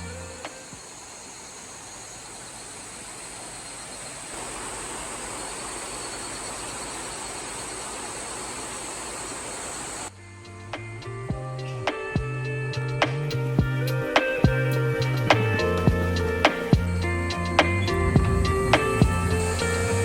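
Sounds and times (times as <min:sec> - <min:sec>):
waterfall rushing: 0:00.1 - 0:10.1.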